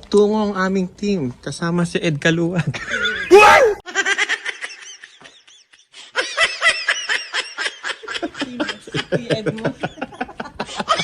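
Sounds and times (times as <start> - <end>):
people laughing: 3.9 - 11.0.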